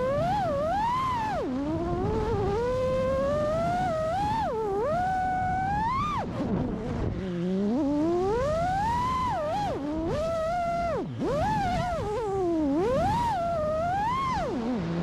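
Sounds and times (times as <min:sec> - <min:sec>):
quadcopter motors whining: 0:00.0 - 0:15.0.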